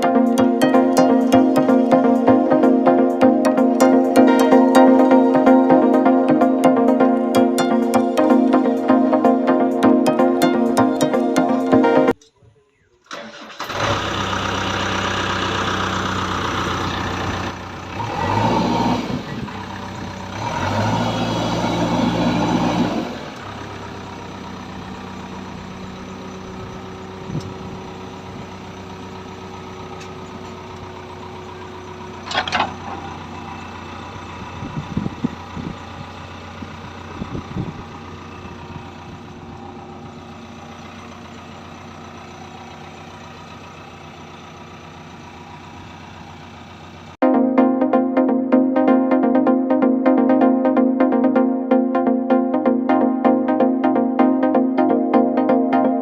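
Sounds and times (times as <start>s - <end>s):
diesel engine running: 0.0s - 12.2s, 13.1s - 47.2s.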